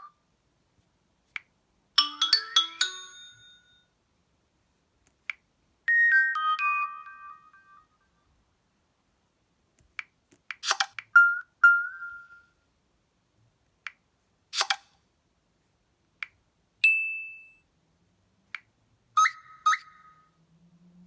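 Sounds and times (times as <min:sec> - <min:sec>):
electronic ringtone clicks and pings: 0:02.0 - 0:03.9, 0:05.9 - 0:08.1, 0:10.6 - 0:12.5, 0:16.8 - 0:17.6.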